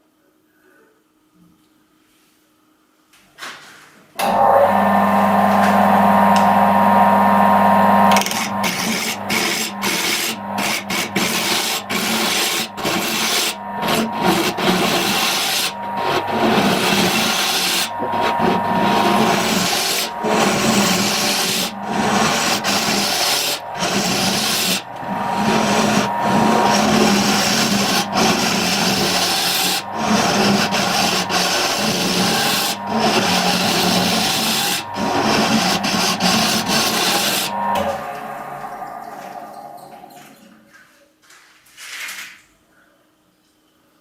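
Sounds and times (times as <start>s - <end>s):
power tool motor humming: 4.2s - 37.9s
wood rubbing and rasping: 8.1s - 37.6s.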